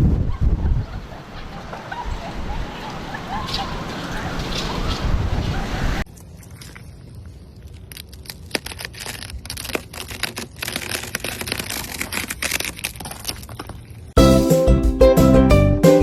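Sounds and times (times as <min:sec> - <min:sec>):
ice cracking: 0:06.4 - 0:14.2.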